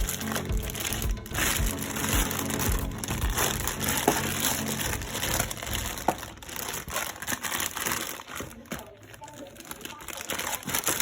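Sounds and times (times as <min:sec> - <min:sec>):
background music with low beat: 0:00.0 - 0:06.9
plastic packaging crinkling: 0:00.0 - 0:11.0.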